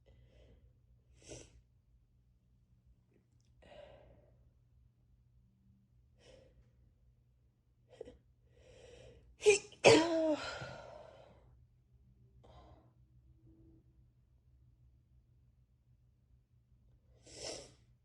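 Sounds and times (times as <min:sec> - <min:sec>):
person sneezing: 0:09.4 - 0:10.8.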